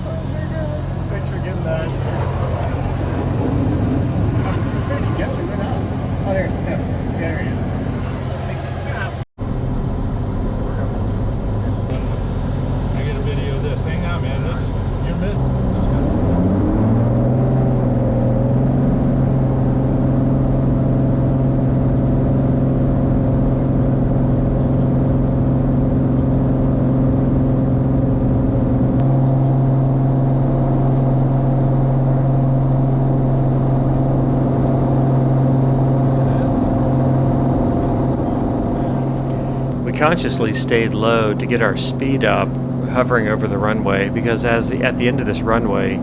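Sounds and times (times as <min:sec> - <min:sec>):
propeller plane engine drone: 0:00.0 - 0:46.0.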